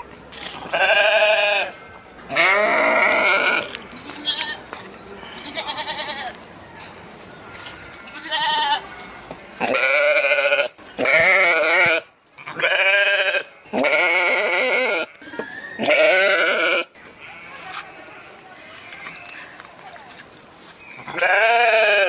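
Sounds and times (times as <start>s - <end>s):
sheep bleating: 0.7s - 4.6s, 5.4s - 6.4s, 8.1s - 8.8s, 9.6s - 17.5s, 21.1s - 22.0s.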